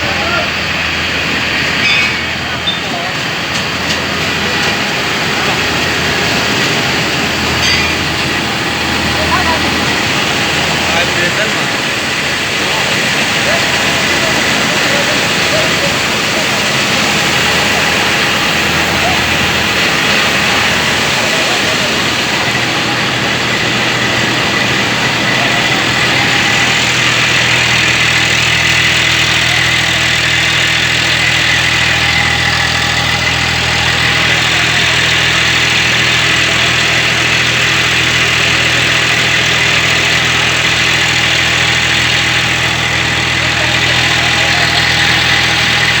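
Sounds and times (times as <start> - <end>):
mill machinery running: 0.0 - 46.0
tractor engine running: 0.0 - 46.0.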